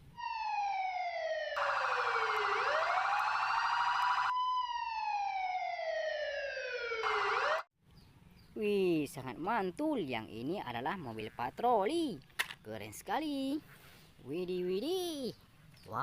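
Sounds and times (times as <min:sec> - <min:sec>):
fast warbling siren tone: 0:00.0 - 0:07.7
toy siren wailing: 0:00.2 - 0:07.7.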